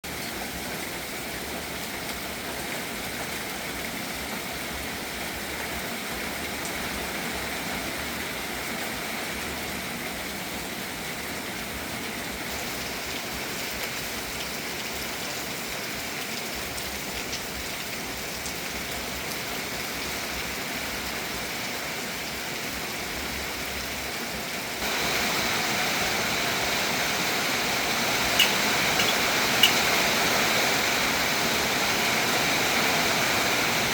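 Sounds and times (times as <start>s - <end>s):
steady rain falling: 0.0s - 33.9s
sharp drips: 24.8s - 33.9s.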